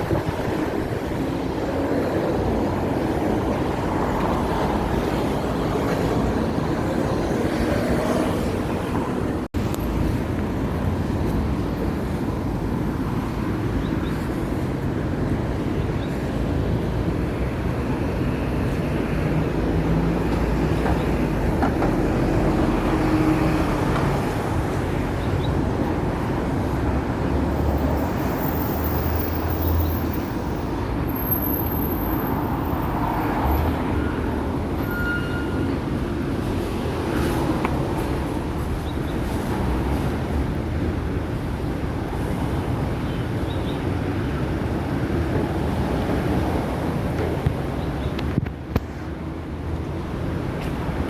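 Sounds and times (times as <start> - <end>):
tram rumbling along tracks: 0.0 - 51.0.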